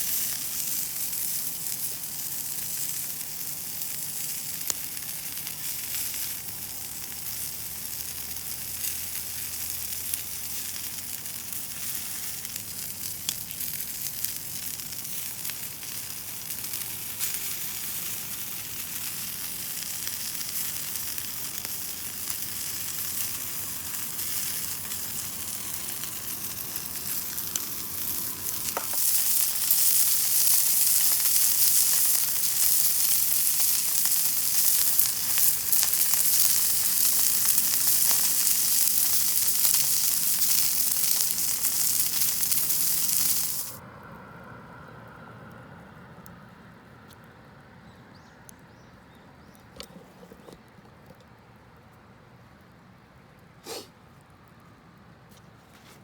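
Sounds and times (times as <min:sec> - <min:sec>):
meat sizzling over wood fire: 0:00.0 - 0:43.8.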